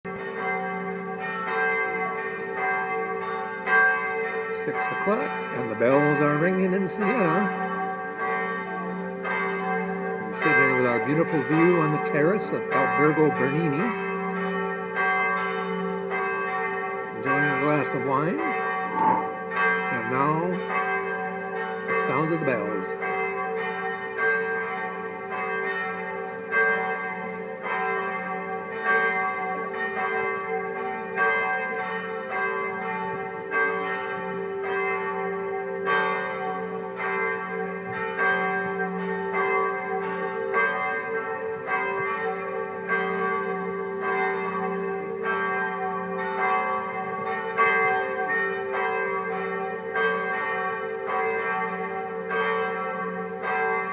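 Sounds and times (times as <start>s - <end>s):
church bells pealing: 0.1s - 53.9s.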